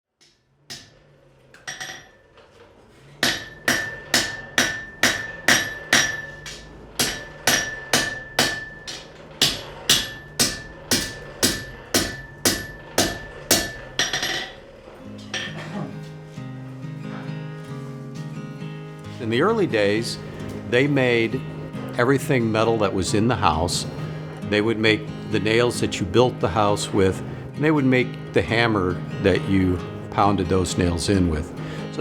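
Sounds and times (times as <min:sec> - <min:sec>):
hammer striking metal on anvil: 0:00.2 - 0:02.3, 0:03.2 - 0:15.8.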